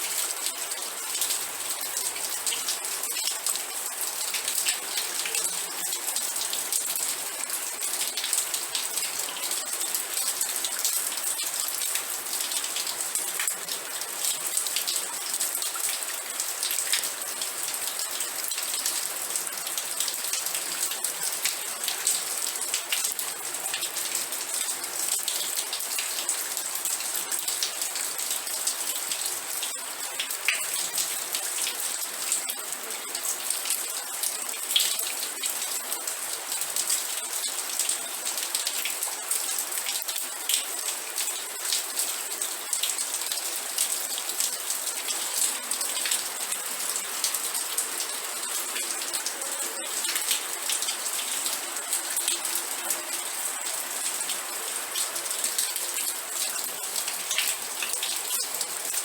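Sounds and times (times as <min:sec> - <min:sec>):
rain drops ticking: 0:24.7 - 0:59.0.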